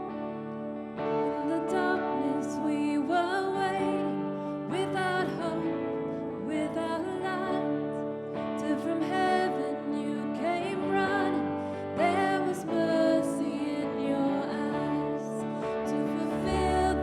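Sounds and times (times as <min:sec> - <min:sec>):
person singing: 0:01.1 - 0:17.0.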